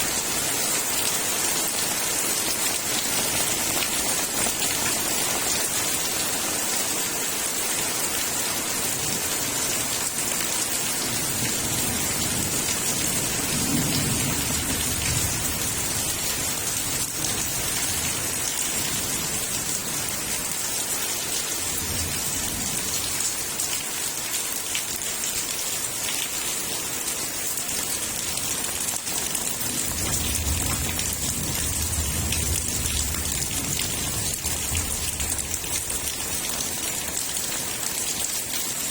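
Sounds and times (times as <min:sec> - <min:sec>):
heavy rain pouring: 0:00.0 - 0:38.9
thunder rumbling: 0:29.9 - 0:36.1.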